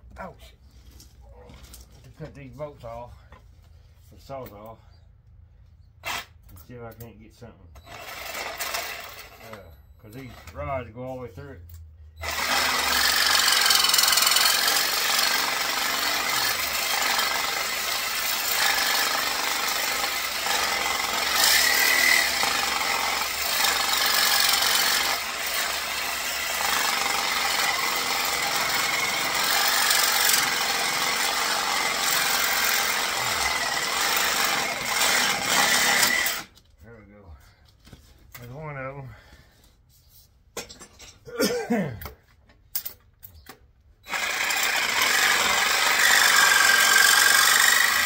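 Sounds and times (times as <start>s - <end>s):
reciprocating saw cutting metal: 12.2s - 36.5s, 44.1s - 48.0s.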